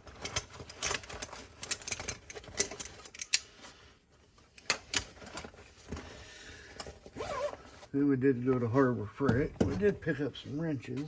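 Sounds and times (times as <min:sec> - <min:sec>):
metal pliers clicking and clinking: 0:00.3 - 0:03.4.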